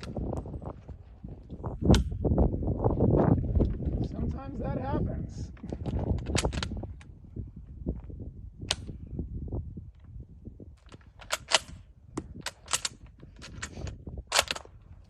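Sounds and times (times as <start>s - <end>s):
rifle bolt action clicking: 10.9s - 14.7s.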